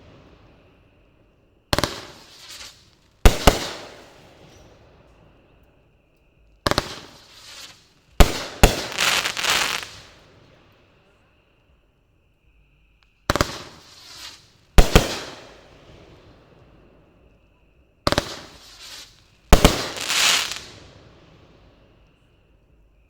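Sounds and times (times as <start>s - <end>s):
firework bangs: 0.0s - 5.6s, 6.7s - 11.1s, 13.3s - 17.3s, 18.1s - 22.1s.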